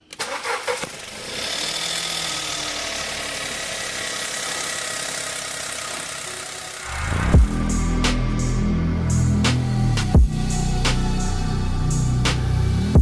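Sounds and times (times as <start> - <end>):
petrol engine running: 0.0 - 10.1
high turbo whine: 0.9 - 13.0.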